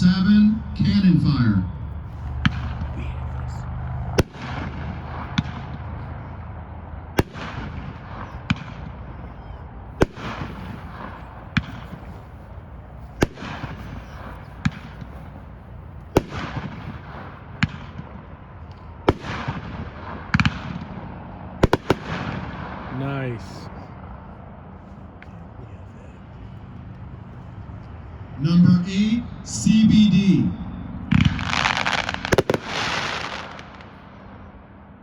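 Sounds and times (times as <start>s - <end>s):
firework bangs: 0.0s - 23.7s, 31.1s - 34.3s
firework crackle: 1.9s - 5.8s, 7.2s - 8.8s, 10.0s - 18.1s, 21.6s - 22.6s, 31.2s - 34.1s.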